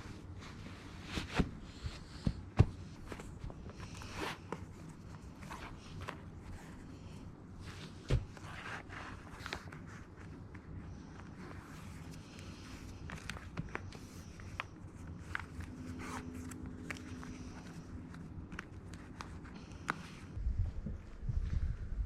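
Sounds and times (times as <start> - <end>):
faint steady hum: 0.0 - 22.0
low rumble: 20.4 - 22.0.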